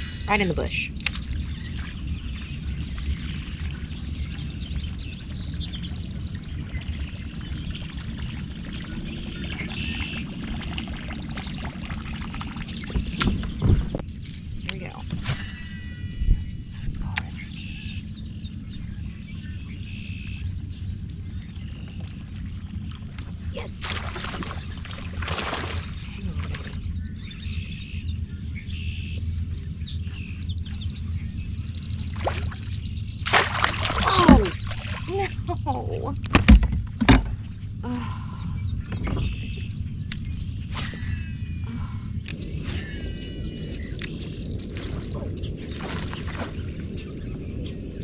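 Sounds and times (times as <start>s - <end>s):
low rumble: 0.0s - 48.0s
small birds chirping: 0.0s - 48.0s
water lapping against kayak: 7.4s - 14.0s, 22.9s - 27.0s, 32.1s - 35.9s, 44.4s - 47.6s.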